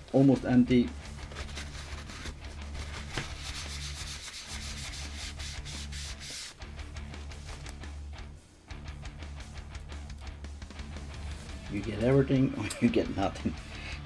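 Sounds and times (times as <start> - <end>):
scratchy rubbing: 1.2 - 6.6.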